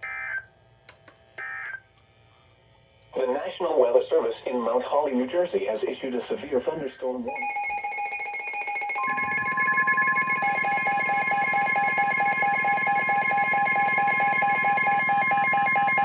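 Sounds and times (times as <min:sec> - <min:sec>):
high-pitched electronic tones: 0:07.3 - 0:16.0.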